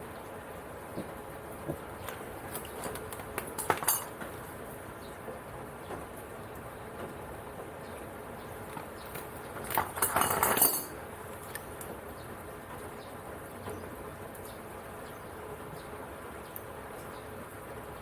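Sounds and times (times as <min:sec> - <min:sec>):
metallic clinking and rattling: 0:03.5 - 0:04.1, 0:09.6 - 0:11.0.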